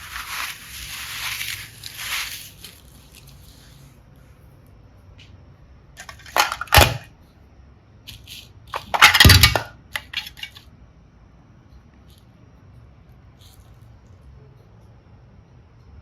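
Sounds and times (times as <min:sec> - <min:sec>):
small hard pieces clattering: 0:00.0 - 0:03.8, 0:06.0 - 0:07.0, 0:08.1 - 0:10.6.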